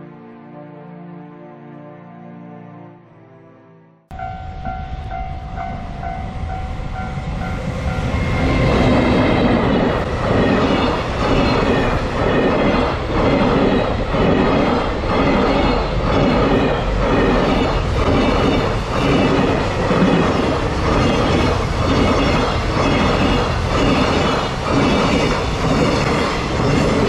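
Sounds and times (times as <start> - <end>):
level crossing alarm bell: 4.1 - 8.6
freight train passing: 4.1 - 27.0
wheels clacking over rail joints: 7.2 - 27.0.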